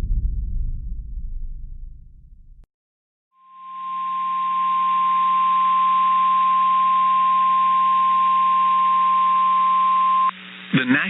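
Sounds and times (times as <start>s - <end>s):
low hum: 0.0s - 2.7s
steady alarm tone: 3.4s - 10.4s
static hiss: 9.8s - 11.0s.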